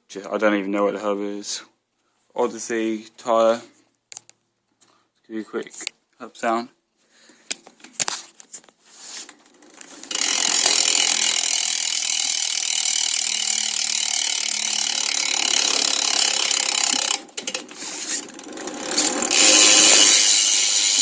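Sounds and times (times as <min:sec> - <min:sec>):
bicycle hub ratcheting clicks: 0:09.4 - 0:21.0.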